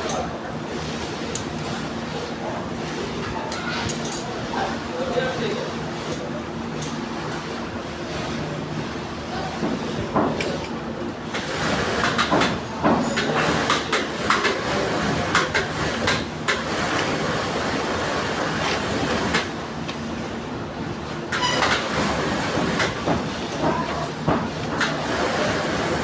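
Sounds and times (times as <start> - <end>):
sharp clicks and knocks: 11.4 - 14.6.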